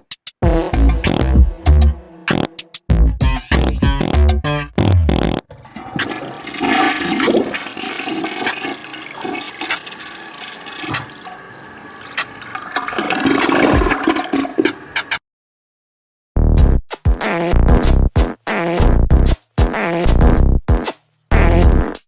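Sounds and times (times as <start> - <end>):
toilet flushing: 5.5 - 15.2.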